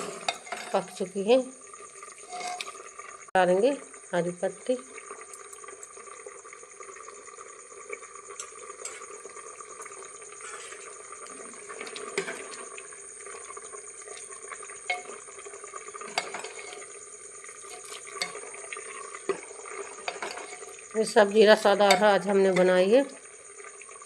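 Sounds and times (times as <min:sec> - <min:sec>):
spoon scraping through gravy: 0:02.2 - 0:02.9, 0:15.9 - 0:20.8.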